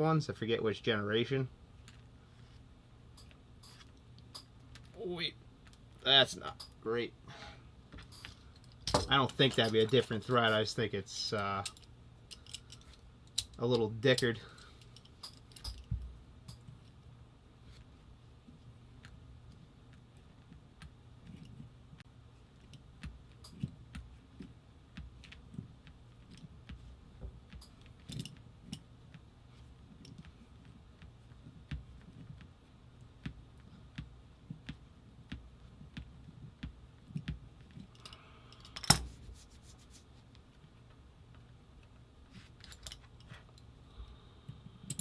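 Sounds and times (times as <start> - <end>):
metal parts clicking and tapping: 3.1 - 5.0, 6.4 - 6.8, 7.9 - 10.8, 11.4 - 16.8, 22.6 - 24.5, 26.2 - 28.9, 36.6 - 39.2, 41.8 - 43.7.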